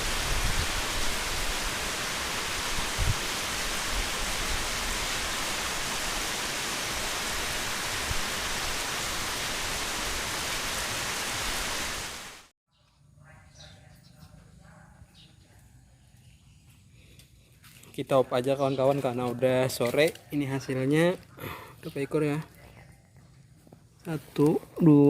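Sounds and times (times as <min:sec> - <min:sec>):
rain hissing: 0:00.0 - 0:12.5.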